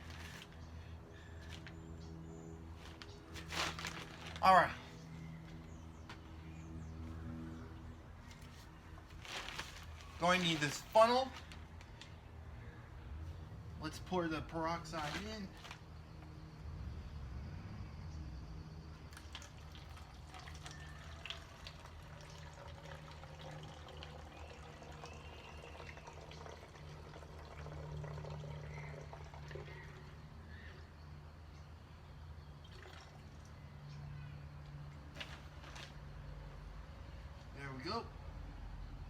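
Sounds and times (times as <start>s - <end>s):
liquid pouring through funnel: 19.1s - 30.2s.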